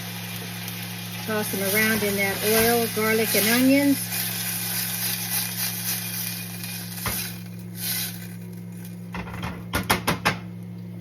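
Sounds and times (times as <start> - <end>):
peas sizzling in hot oil: 0.0 - 9.1.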